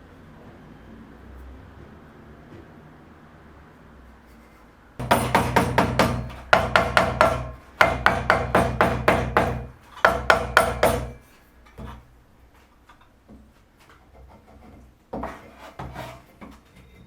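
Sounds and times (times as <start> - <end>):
rapid ringing hammer taps: 5.0 - 11.2.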